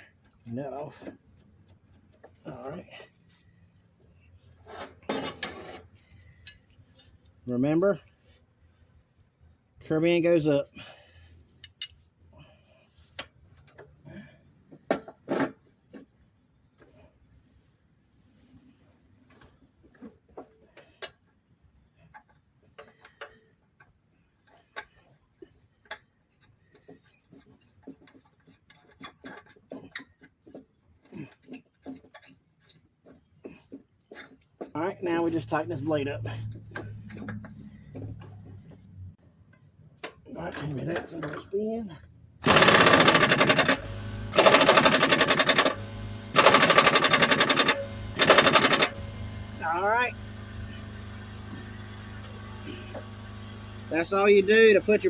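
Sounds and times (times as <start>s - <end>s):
air ratchet rattling: 42.4s - 49.8s.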